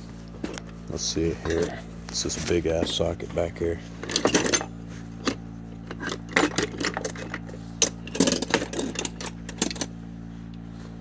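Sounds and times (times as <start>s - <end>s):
steel sockets clattering: 4.0s - 9.9s.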